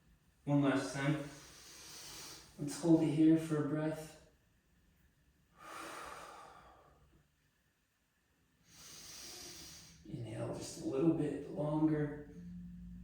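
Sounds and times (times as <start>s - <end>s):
person breathing slowly: 1.2s - 2.6s, 5.6s - 7.1s, 8.6s - 10.0s.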